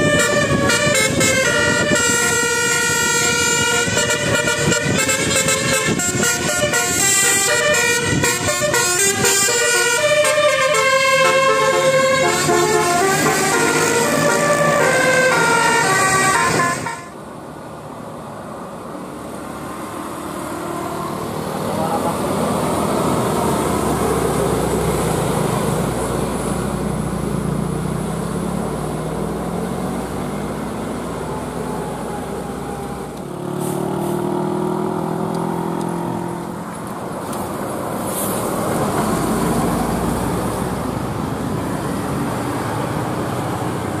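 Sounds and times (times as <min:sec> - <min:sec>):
multi-tone bus horn tune: 0:00.0 - 0:17.2, 0:20.5 - 0:21.4
bus engine: 0:00.0 - 0:44.0
traffic noise: 0:00.0 - 0:44.0.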